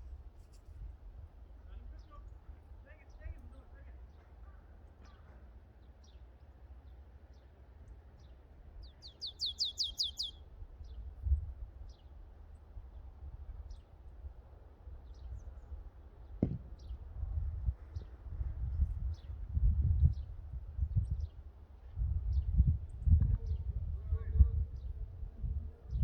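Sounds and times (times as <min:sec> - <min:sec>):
wind rumble on microphone: 0:00.0 - 0:04.0, 0:10.4 - 0:26.0
small bird chirping: 0:08.8 - 0:11.1
brief knock: 0:16.4 - 0:16.9.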